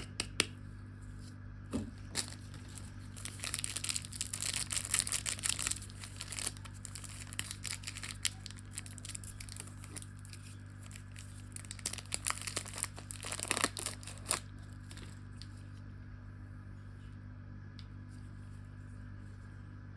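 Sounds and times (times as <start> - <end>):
low steady hum: 0.0 - 19.9
plastic wrapper crinkling: 1.8 - 15.6.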